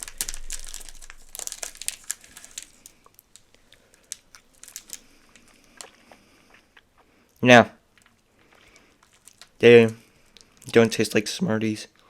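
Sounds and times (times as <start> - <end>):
plastic wrapper crinkling: 0.0 - 6.0, 8.6 - 10.9.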